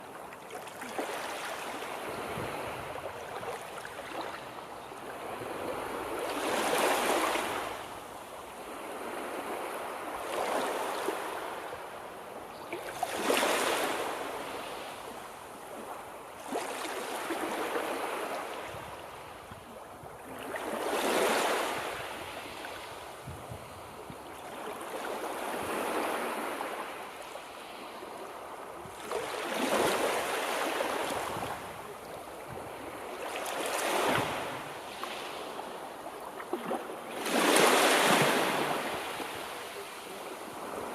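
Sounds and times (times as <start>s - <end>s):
surf waves breaking: 28.9s - 40.9s.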